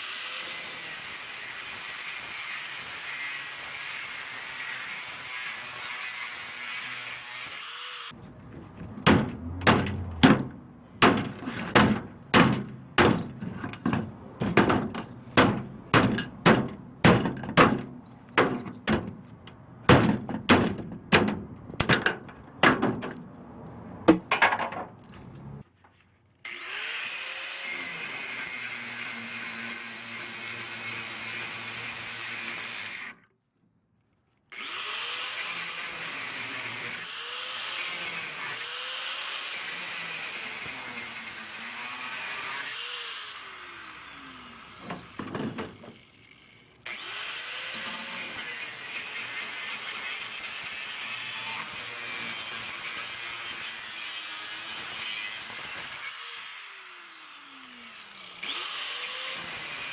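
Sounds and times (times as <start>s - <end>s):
hammer striking scrap metal: 8.5s - 19.2s, 19.9s - 23.2s, 24.1s - 25.0s.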